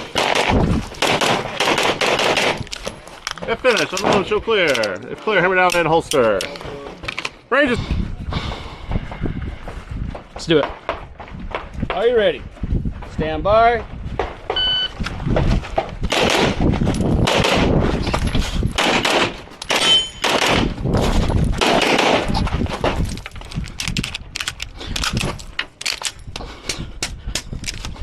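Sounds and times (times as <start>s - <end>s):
rapid pistol shots: 0.0s - 2.7s, 16.0s - 17.9s, 18.8s - 20.8s, 21.6s - 22.4s.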